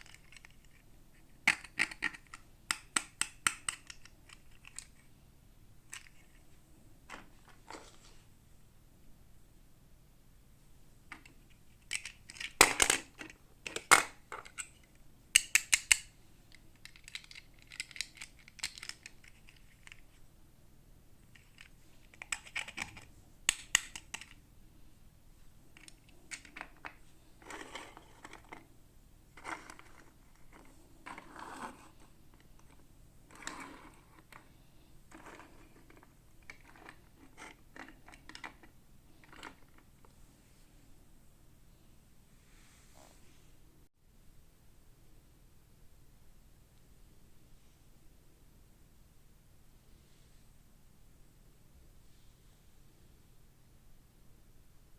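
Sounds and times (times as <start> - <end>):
plastic toy pieces clicking: 0.0 - 0.8, 1.5 - 5.0, 11.2 - 14.8, 15.4 - 20.0, 21.3 - 24.4, 35.1 - 39.8.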